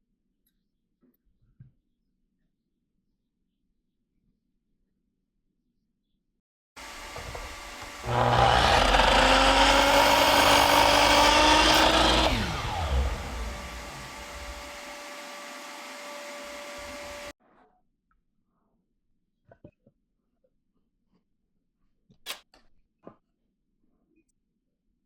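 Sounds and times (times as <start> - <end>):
power drill whining: 6.8 - 17.3.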